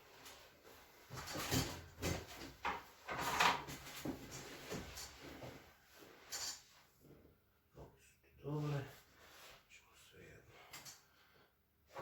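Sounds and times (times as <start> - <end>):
rustles and knocks on padded table: 1.1 - 6.4.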